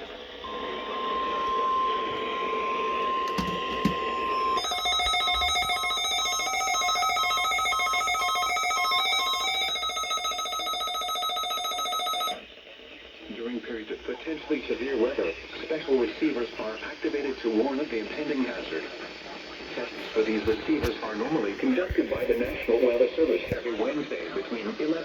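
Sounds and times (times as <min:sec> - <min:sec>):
steady warning tone: 0:00.0 - 0:12.4
electronic alarm warbling: 0:00.4 - 0:12.4.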